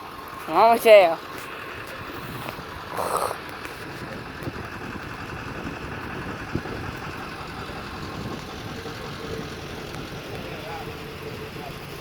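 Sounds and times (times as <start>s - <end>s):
vehicle engine and road noise: 0.0s - 12.0s.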